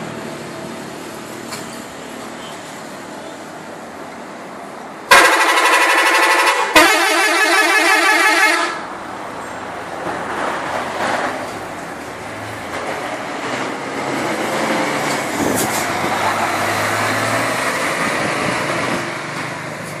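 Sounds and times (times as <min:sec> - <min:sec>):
tyre and road noise: 0:00.0 - 0:20.0
heavy vehicle driving past: 0:08.8 - 0:20.0.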